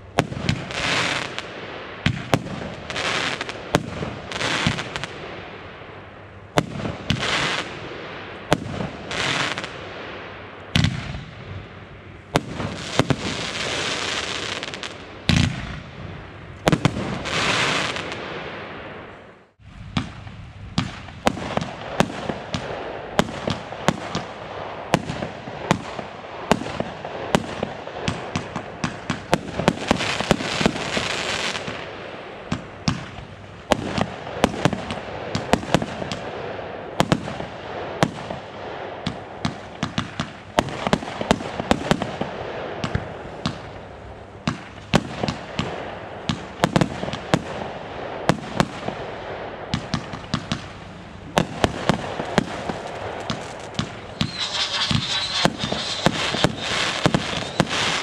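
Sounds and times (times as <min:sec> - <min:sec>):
fireworks bangs and crackles: 0:00.0 - 0:05.8, 0:06.5 - 0:58.0
hissing firework burst: 0:51.3 - 0:58.0.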